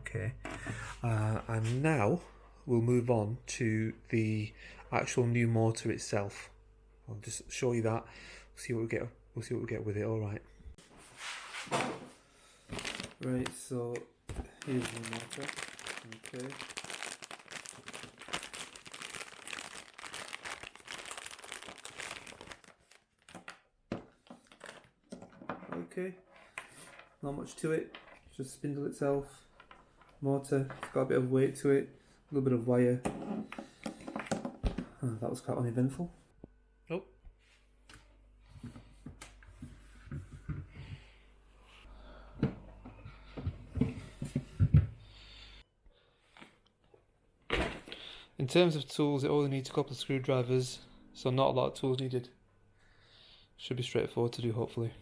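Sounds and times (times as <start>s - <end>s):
packaging crinkling: 12.7s - 13.6s, 14.3s - 23.6s.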